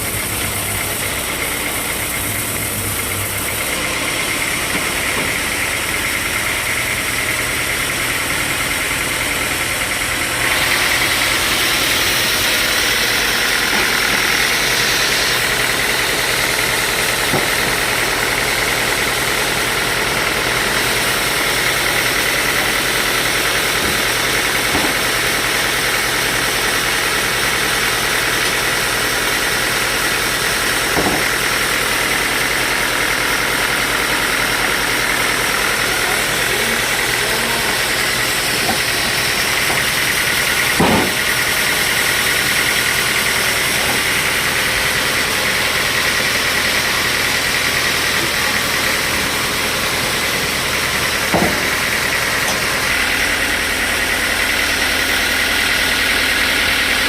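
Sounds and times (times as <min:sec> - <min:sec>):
sawmill saw cutting timber: 0:00.0 - 0:57.0.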